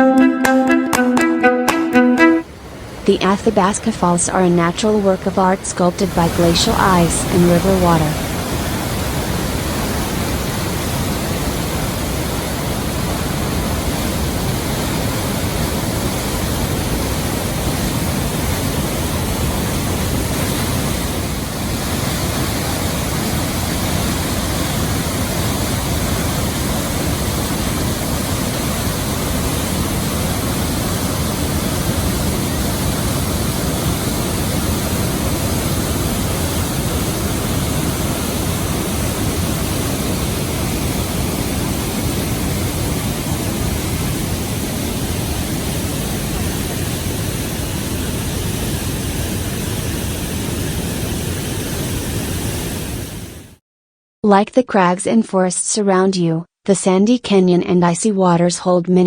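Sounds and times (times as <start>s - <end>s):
waterfall roaring: 2.4s - 46.8s.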